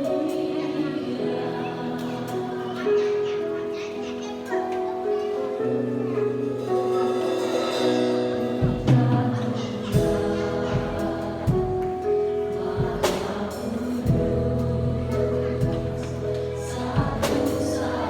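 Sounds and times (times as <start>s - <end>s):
sustained keyboard chords: 0.0s - 18.0s
low drum beats: 8.5s - 18.0s.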